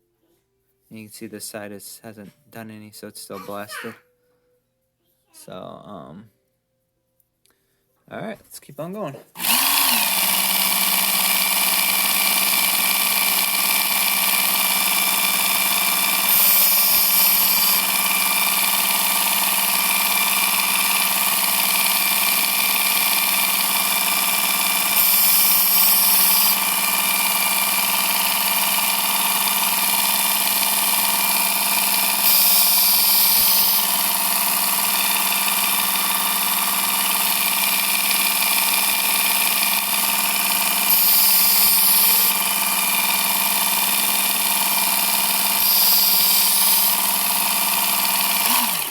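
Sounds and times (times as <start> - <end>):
belt grinder motor whine: 9.4 - 48.9.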